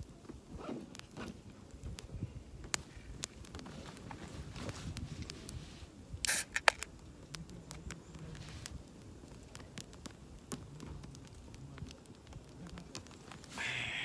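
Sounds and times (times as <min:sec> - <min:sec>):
campfire crackling and popping: 0:00.0 - 0:14.0
short hiss: 0:06.2 - 0:06.7, 0:13.5 - 0:14.0.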